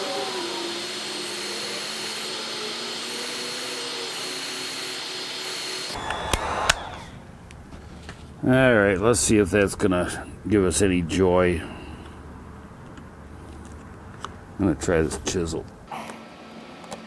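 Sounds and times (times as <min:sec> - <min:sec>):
heat gun blowing with whine: 0:00.0 - 0:07.2.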